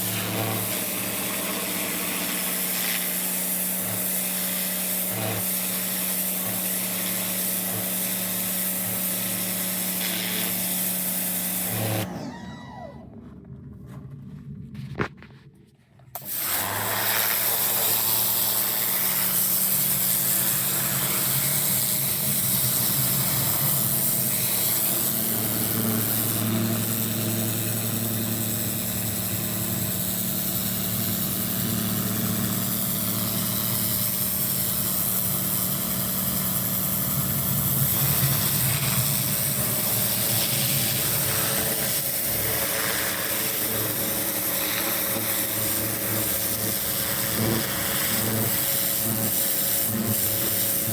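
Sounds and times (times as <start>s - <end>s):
water spray hissing: 0.0s - 12.0s, 16.2s - 25.0s
pressure washer engine humming: 0.0s - 12.9s, 16.2s - 50.9s.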